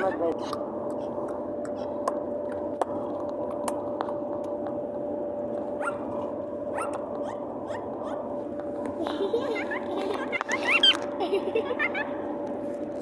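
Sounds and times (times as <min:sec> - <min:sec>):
parrot squeaks: 0:09.6 - 0:11.0.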